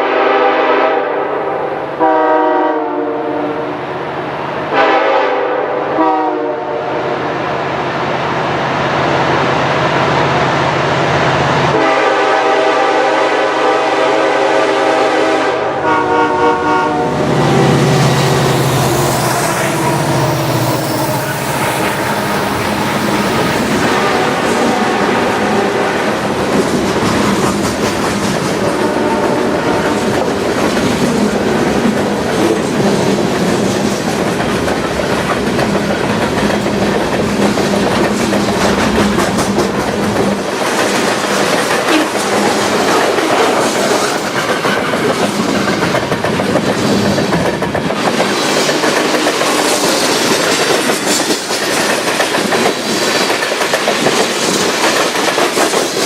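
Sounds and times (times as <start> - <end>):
train wheels clattering over rails: 17.3 - 56.0.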